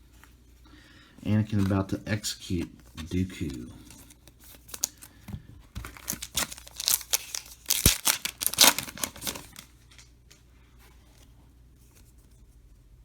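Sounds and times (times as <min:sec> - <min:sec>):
wrapper tearing and crinkling: 0:04.0 - 0:05.1, 0:05.8 - 0:10.1.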